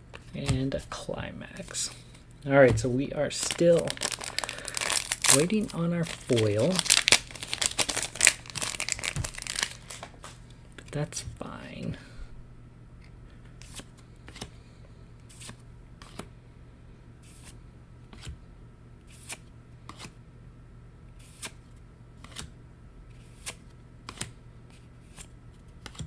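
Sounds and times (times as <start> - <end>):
faint steady hum: 0.0 - 25.8
cards sliding and tapping: 19.1 - 20.2, 22.2 - 22.5, 23.1 - 26.0.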